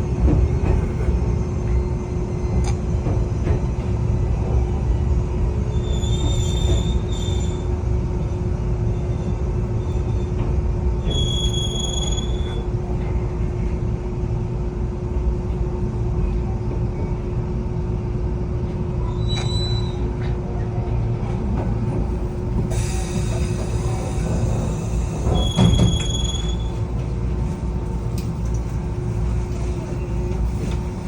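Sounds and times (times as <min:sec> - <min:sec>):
train rumbling on rails: 0:00.0 - 0:31.0
train wheels squealing: 0:05.7 - 0:07.8, 0:11.0 - 0:12.7, 0:19.0 - 0:20.2, 0:22.7 - 0:26.8.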